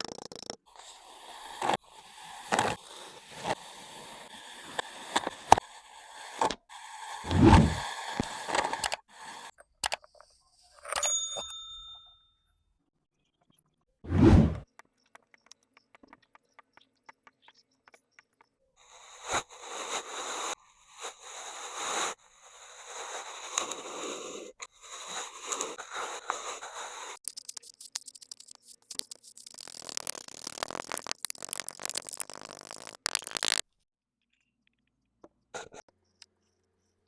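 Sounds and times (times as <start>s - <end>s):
tool scraping kinetic sand: 0.0s - 9.5s, 18.9s - 33.6s.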